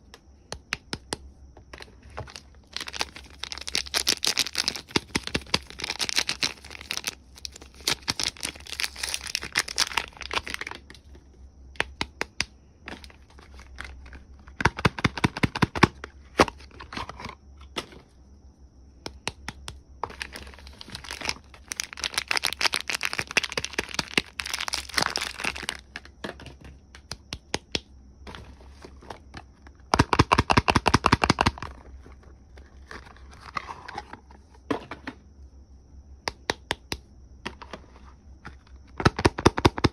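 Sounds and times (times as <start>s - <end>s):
wrappers crinkling and tearing: 2.3s - 10.8s, 20.1s - 25.8s.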